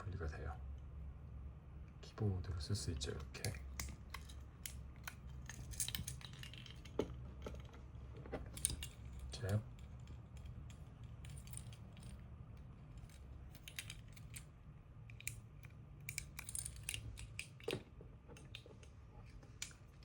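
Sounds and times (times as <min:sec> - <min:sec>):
plastic figures clicking: 0:12.9 - 0:20.0.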